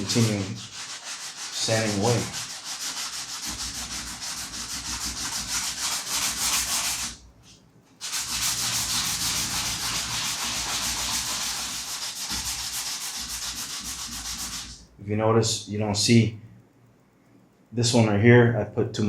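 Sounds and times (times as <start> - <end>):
sandpaper rubbing by hand: 0.0 - 7.2, 8.0 - 14.8.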